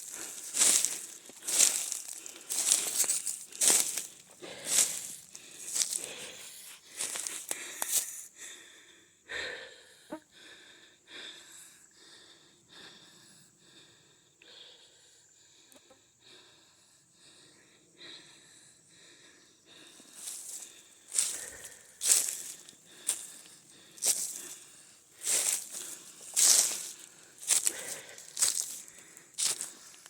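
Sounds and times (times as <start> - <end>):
dry leaves rustling and crackling: 0.0 - 6.1, 21.1 - 23.3, 25.2 - 28.8, 29.4 - 29.7
person breathing heavily: 0.0 - 30.0.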